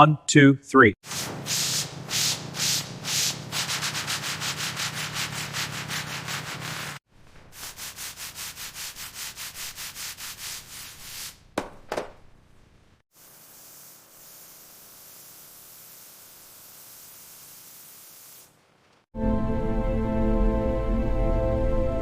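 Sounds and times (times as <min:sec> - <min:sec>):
hand sanding strokes: 0:01.0 - 0:11.4
faint steady hiss: 0:12.5 - 0:19.1.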